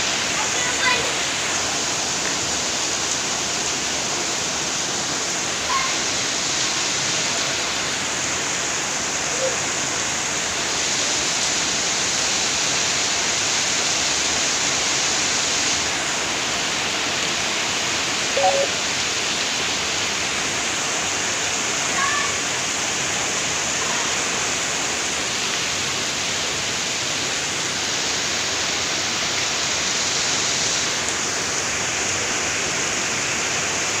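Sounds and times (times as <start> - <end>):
heavy rain pouring: 0.0 - 34.0
faint short calls: 18.4 - 18.8.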